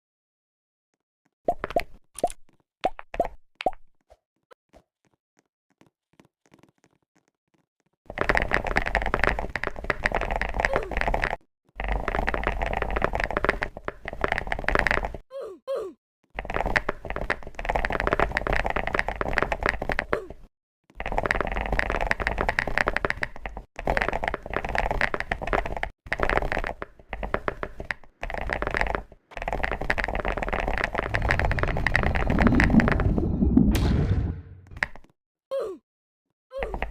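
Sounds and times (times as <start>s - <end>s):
chocolate crunching and crackling: 23.8s - 32.8s.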